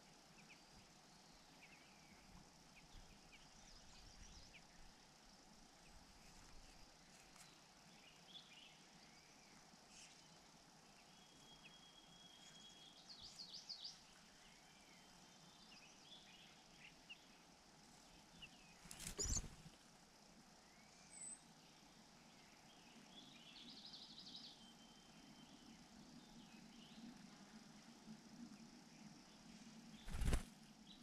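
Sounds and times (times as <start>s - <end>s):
birds chirping: 18.2s - 19.7s.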